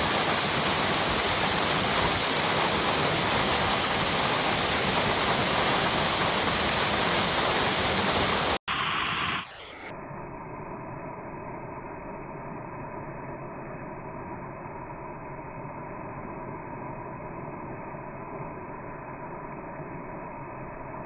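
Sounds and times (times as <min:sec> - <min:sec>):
waterfall pouring: 0:00.0 - 0:08.6.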